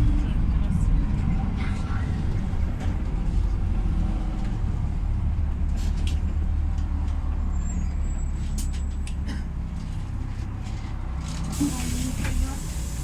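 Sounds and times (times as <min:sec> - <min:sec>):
bus engine drone: 0:00.0 - 0:13.0.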